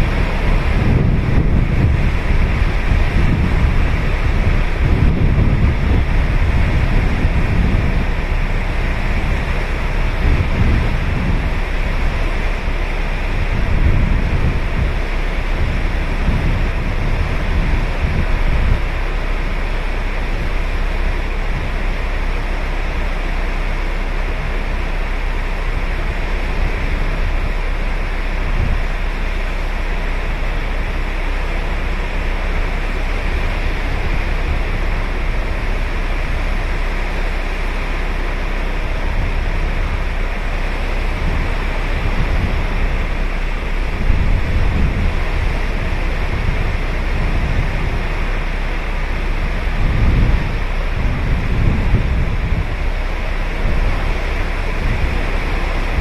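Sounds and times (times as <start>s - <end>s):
wind buffeting microphone: 0.0s - 56.0s
ocean surf breaking: 24.3s - 56.0s.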